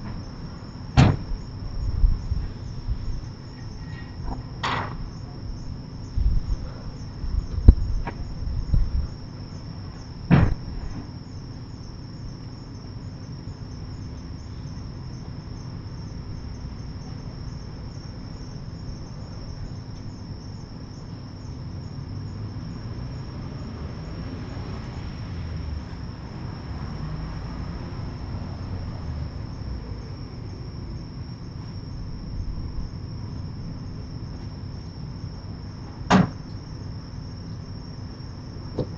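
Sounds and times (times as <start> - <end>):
high insect trill: 0.0 - 38.9
sharp bangs and knocks: 1.0 - 1.3, 10.3 - 11.1
low rumble: 5.0 - 9.2.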